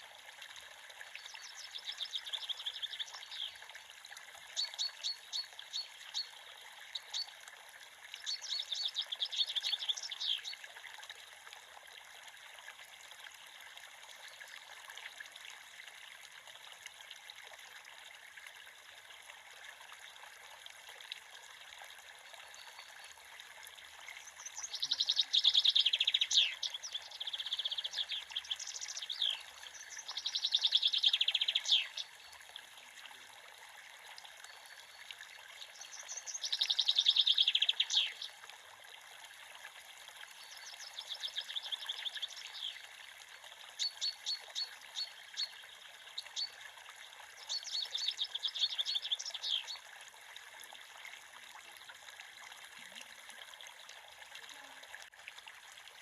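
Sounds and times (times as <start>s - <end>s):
creek running: 0.0s - 56.0s
small birds chirping: 1.2s - 3.6s, 4.6s - 6.3s, 8.2s - 10.6s, 24.2s - 32.2s, 35.6s - 38.3s, 40.4s - 42.8s, 43.8s - 46.6s, 47.4s - 49.8s.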